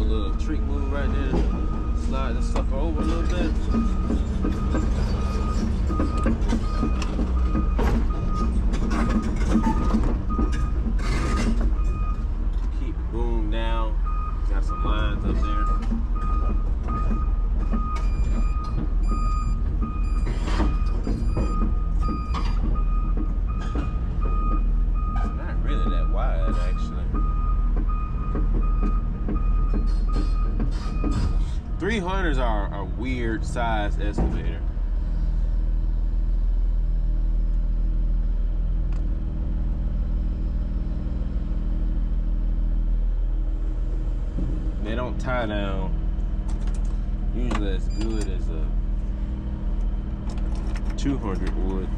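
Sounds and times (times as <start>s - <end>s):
diesel engine rumble: 0.0s - 51.9s
excavator backup alarm beeping: 0.3s - 12.2s, 13.9s - 31.4s.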